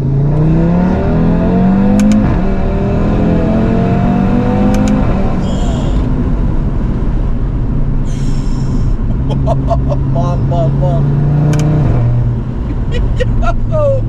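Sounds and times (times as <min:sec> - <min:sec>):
car engine accelerating hard: 0:00.0 - 0:14.0
sharp clicks: 0:01.9 - 0:02.3, 0:04.6 - 0:05.1, 0:11.4 - 0:12.0.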